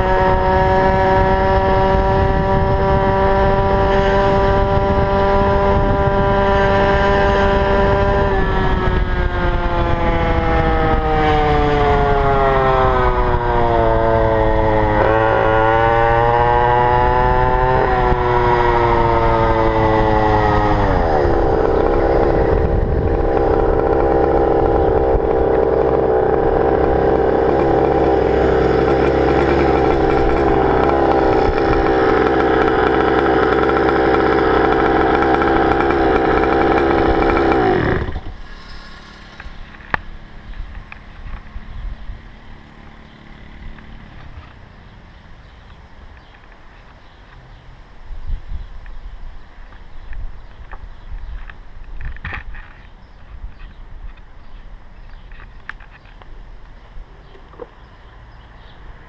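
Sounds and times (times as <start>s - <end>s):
two-stroke engine revving: 0.0s - 46.4s.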